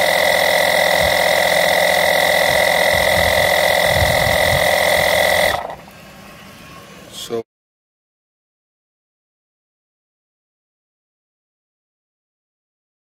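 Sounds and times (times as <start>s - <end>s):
tire inflator compressor whine: 0.0s - 6.3s.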